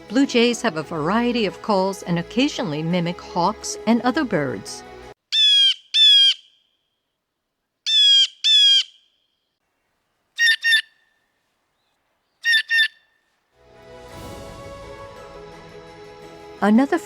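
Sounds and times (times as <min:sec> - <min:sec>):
blue jay calling: 0:05.3 - 0:06.9, 0:07.8 - 0:09.5, 0:10.4 - 0:11.2, 0:11.8 - 0:13.2.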